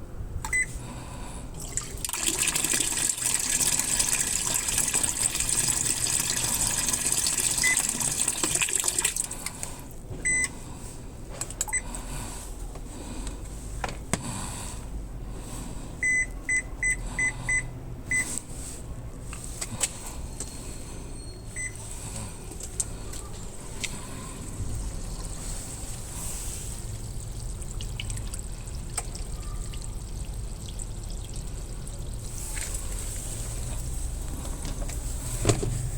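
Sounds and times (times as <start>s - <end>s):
control panel beeps: 0.4s - 0.7s, 10.2s - 10.5s, 16.0s - 18.3s, 21.2s - 21.8s
water pouring into washing machine: 1.6s - 9.5s, 24.8s - 34.0s.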